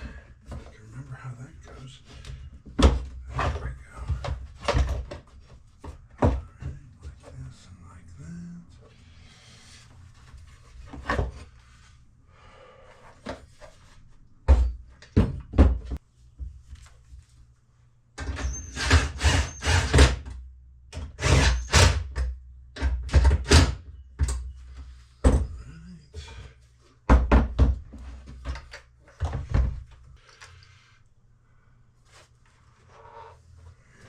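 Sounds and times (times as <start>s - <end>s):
knocks and clunks of bike parts: 2.2s - 7.1s, 14.4s - 16.6s, 22.0s - 26.4s, 27.0s - 30.1s.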